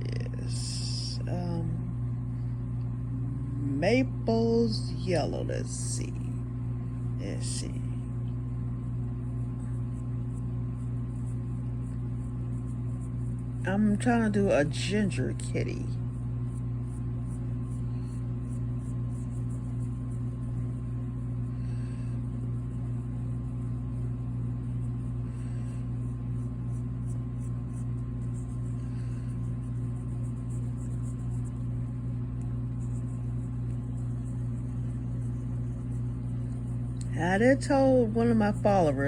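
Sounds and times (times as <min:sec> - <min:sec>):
low electrical hum: 0:00.0 - 0:39.0
colouring scratching on paper: 0:08.8 - 0:39.0.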